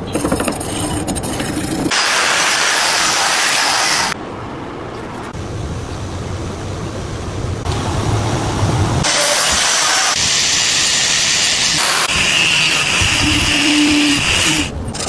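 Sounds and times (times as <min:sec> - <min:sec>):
abrasive hiss on steel: 0:09.0 - 0:14.7.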